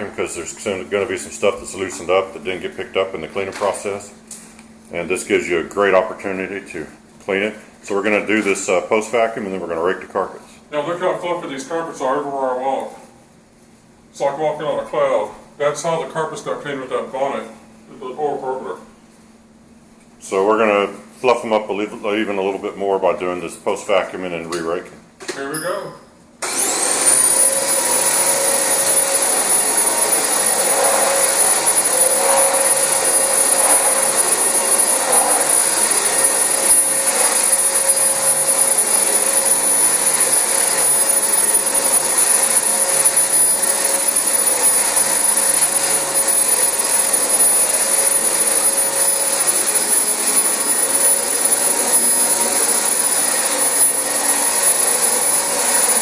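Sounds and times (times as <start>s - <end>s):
vacuum cleaner running on carpet: 26.4s - 56.0s.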